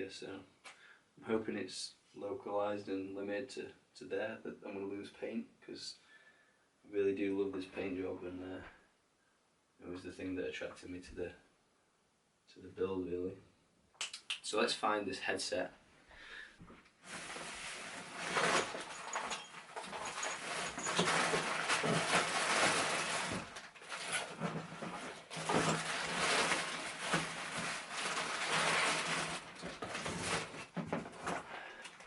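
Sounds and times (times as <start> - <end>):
rustling while rummaging: 17.0 - 32.0
small knocks and clatters: 18.0 - 32.0.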